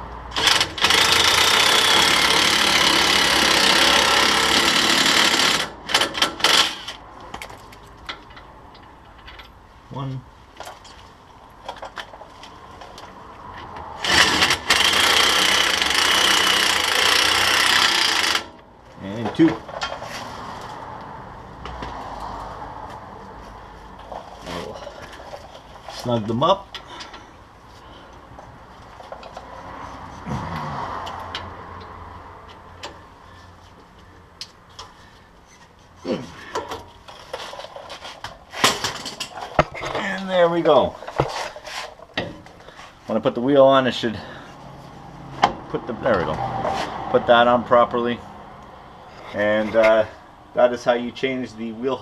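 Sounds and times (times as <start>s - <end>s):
power wrench running: 0.3s - 7.0s, 14.0s - 18.6s
ratchet and hand tool clicks: 0.3s - 7.0s, 14.0s - 18.6s.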